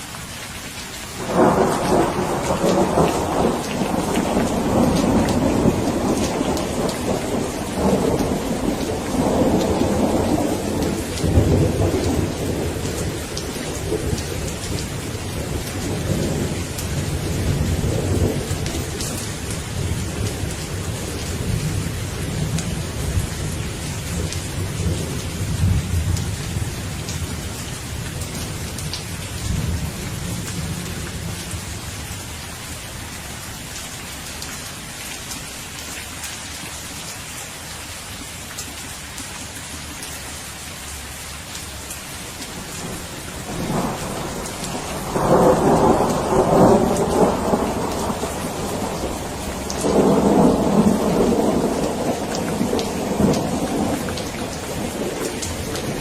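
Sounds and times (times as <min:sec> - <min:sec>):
steady rain: 0:00.0 - 0:56.0
thunder rumbling: 0:01.2 - 0:31.8, 0:42.5 - 0:56.0.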